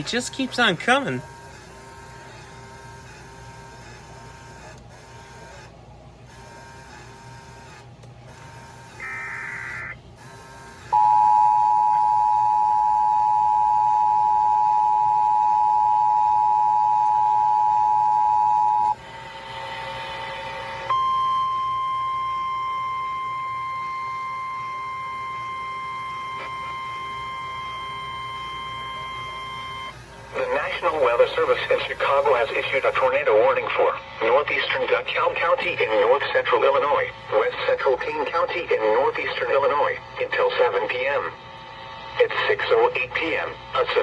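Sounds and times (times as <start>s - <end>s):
steady single alarm tone: 6.4s - 33.1s
two-tone emergency signal: 9.0s - 10.0s, 10.9s - 19.0s, 20.9s - 33.1s
digital data tones: 20.9s - 33.1s.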